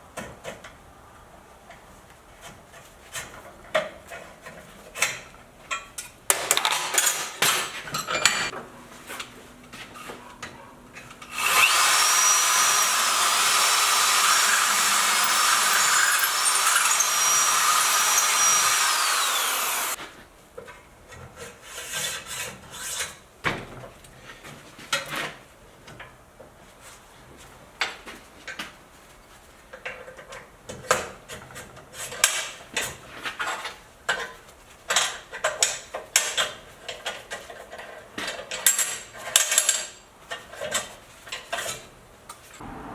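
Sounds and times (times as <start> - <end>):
metal parts clicking and scraping: 5.0 - 8.5, 14.2 - 19.4
power tool whining on metal: 11.1 - 20.0.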